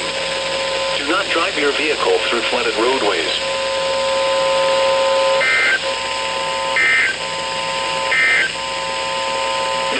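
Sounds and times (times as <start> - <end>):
steady tone: 3.4 - 9.9
warbling digital data tones: 4.4 - 9.9.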